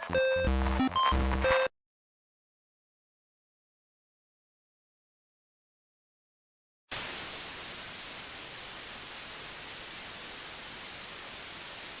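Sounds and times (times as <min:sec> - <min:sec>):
static hiss: 0:06.9 - 0:12.0.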